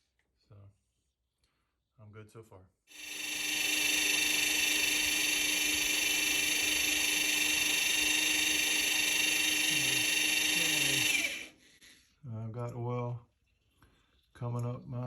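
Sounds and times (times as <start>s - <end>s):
electric drill running: 2.9s - 11.6s.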